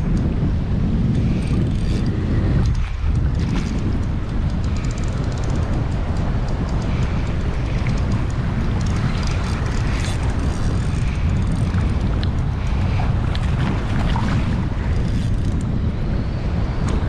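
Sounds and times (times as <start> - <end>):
wind buffeting microphone: 0.0 - 17.0
surf washing: 6.4 - 15.0.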